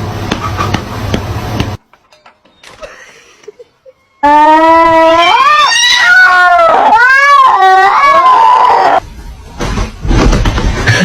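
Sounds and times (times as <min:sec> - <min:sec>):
cat yowling: 0:04.2 - 0:09.0.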